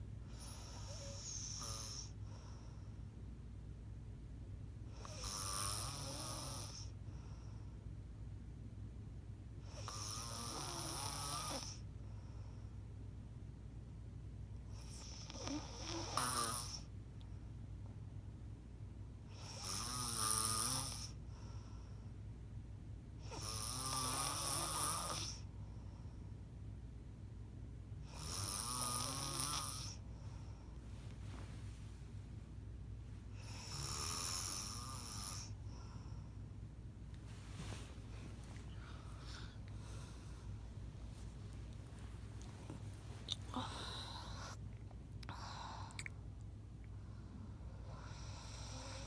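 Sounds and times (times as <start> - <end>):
low steady hum: 0.0 - 5.0, 6.6 - 9.7, 11.8 - 19.3, 21.1 - 23.2, 25.3 - 28.2, 29.6 - 49.0
quiet breathing: 0.2 - 3.2, 6.6 - 8.0, 11.6 - 13.0, 21.1 - 22.4, 25.2 - 26.5, 29.6 - 49.0
person snoring: 33.4 - 35.5, 43.3 - 44.6
wet mouth clicks: 42.9 - 43.5, 44.8 - 46.2.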